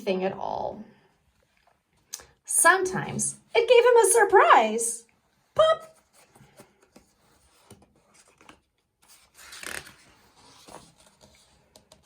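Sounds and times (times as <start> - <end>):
book page turning: 6.0 - 12.0
paper rustling: 6.0 - 12.0.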